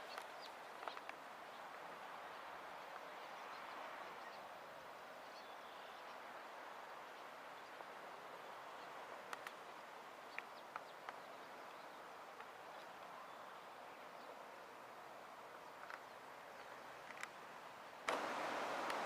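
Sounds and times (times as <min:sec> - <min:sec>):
faint hiss: 0:00.0 - 0:19.0.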